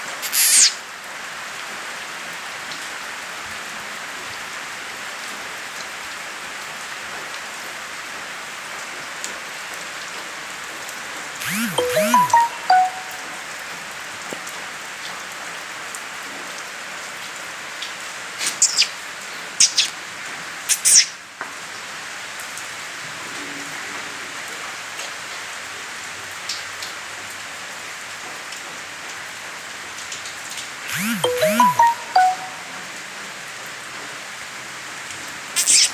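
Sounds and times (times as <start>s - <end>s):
very high chirps: 0.0s - 0.8s, 11.4s - 13.3s, 30.9s - 32.7s, 35.6s - 35.9s
rain-like hiss: 0.0s - 11.4s, 13.9s - 30.9s.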